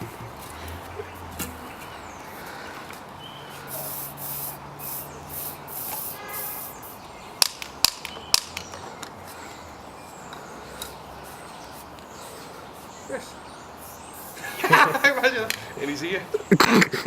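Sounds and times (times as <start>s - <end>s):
aerosol spray can hissing: 3.6s - 7.1s, 13.8s - 14.7s
sharp clicks: 7.4s - 9.2s.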